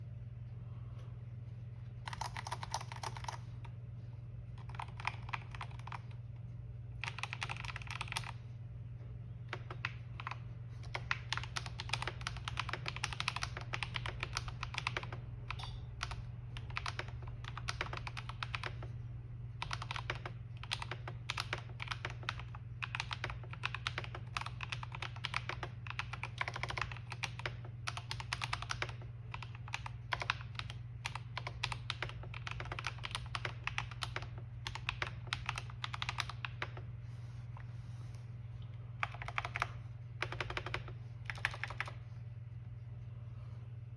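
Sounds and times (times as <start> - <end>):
steady low hum: 0.0 - 43.9
typing on mechanical keyboard: 2.0 - 3.5, 4.6 - 6.2, 7.0 - 8.4, 9.5 - 18.9, 19.6 - 36.9, 39.0 - 42.0.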